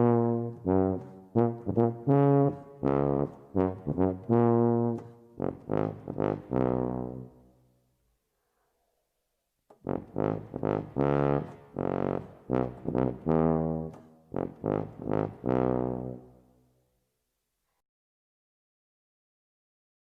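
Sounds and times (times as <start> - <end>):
low brass instrument playing: 0.0 - 7.5, 9.8 - 16.5.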